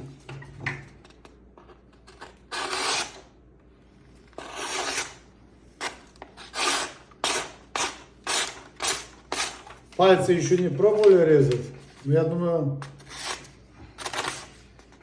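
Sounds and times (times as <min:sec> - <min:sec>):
knife blade rasping cuts: 0:02.2 - 0:03.2, 0:04.4 - 0:05.2, 0:05.8 - 0:09.7.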